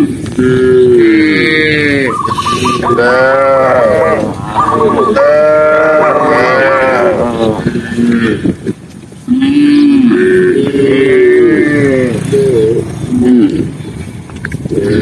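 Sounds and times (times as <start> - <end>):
cattle mooing: 0.4 - 8.5.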